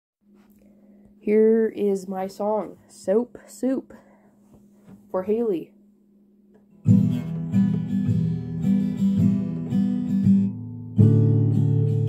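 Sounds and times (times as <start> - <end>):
acoustic guitar strumming: 6.7 - 12.0.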